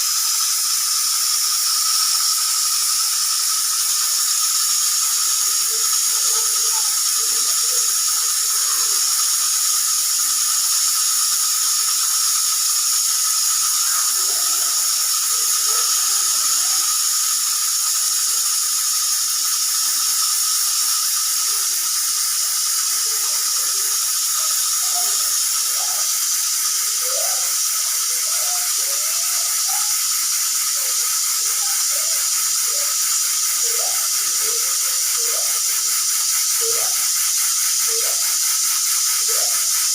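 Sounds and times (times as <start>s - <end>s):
pressure cooker hissing steam: 0.0s - 39.9s.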